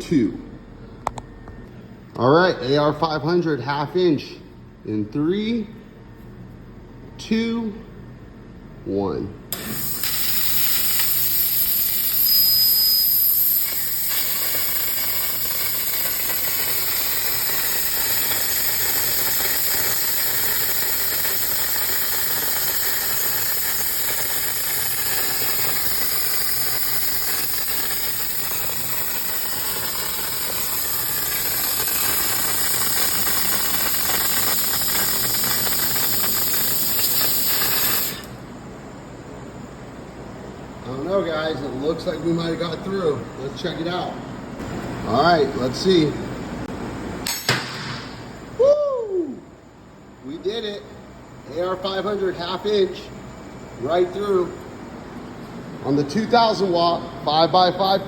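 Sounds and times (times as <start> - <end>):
laser cutter hissing: 9.5 - 38.4.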